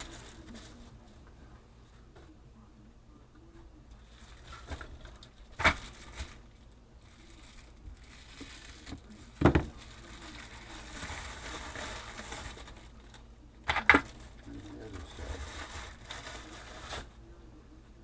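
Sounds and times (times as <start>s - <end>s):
packaging rustling: 0.0s - 0.9s, 3.9s - 17.1s
objects knocking on a desk: 9.4s - 9.7s.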